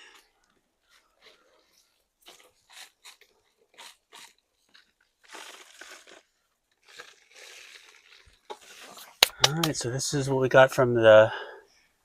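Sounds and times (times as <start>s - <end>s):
hands scraping through soil: 6.9s - 9.7s.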